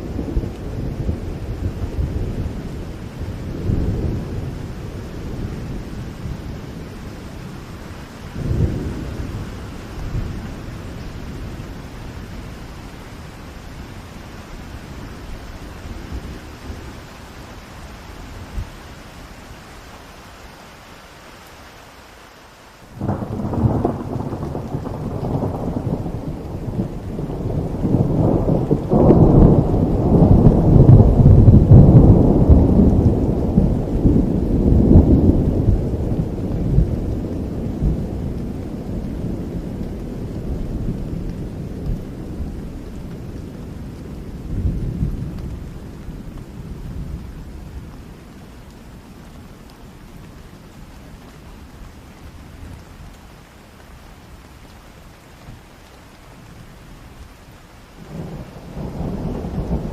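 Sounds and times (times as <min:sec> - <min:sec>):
thunder rumbling: 0:00.0 - 0:17.4, 0:23.0 - 0:52.0, 0:56.4 - 0:59.9
steady rain: 0:00.0 - 0:59.9.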